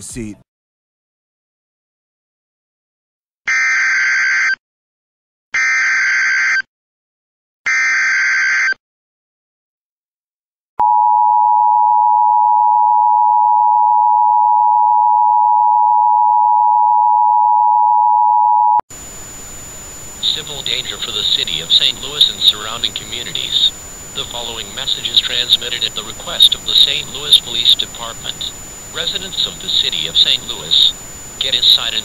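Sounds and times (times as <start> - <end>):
data header warble bursts: 18.9 - 32.0.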